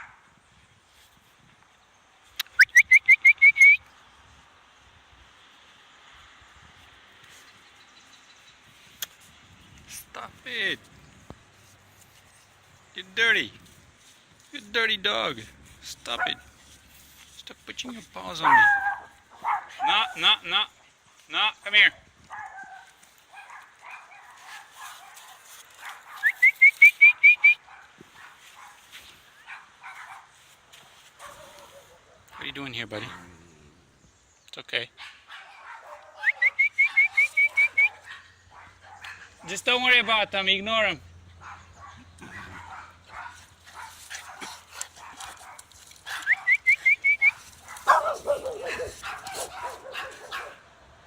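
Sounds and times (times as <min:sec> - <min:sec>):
distant dogs barking: 0:00.0 - 0:00.3, 0:16.0 - 0:16.8, 0:18.2 - 0:20.4, 0:22.3 - 0:30.4, 0:31.2 - 0:34.0, 0:34.9 - 0:51.0.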